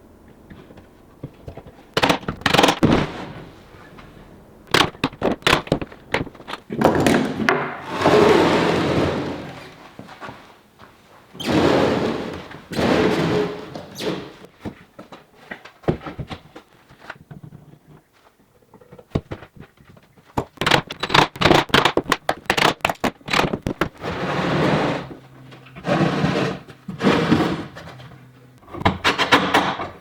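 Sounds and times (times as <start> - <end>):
scraping sounds: 7.8 - 10.6, 11.4 - 14.5.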